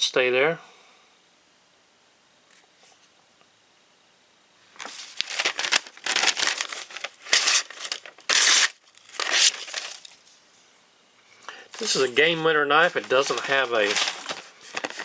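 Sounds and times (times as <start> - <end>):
packaging crinkling: 4.8 - 10.3, 11.5 - 15.0.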